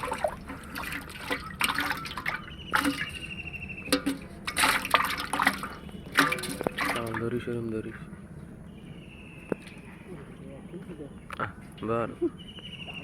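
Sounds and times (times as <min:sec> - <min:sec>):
water splashing and dripping: 0:00.0 - 0:07.5.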